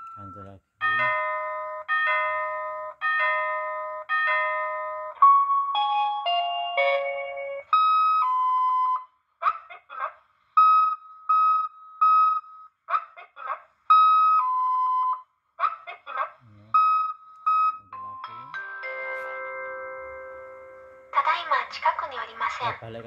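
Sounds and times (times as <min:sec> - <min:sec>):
two-tone electronic beeps: 0:00.0 - 0:09.1, 0:10.6 - 0:12.7, 0:13.9 - 0:15.3, 0:16.6 - 0:19.4.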